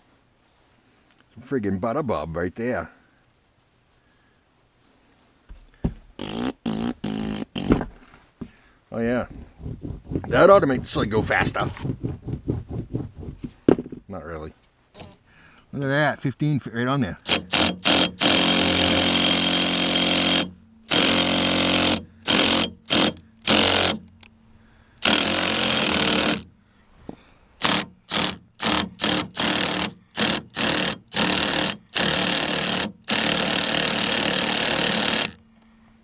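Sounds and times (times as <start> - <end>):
impact wrench hammering: 17.2 - 24.3, 25.0 - 26.5, 27.6 - 35.4.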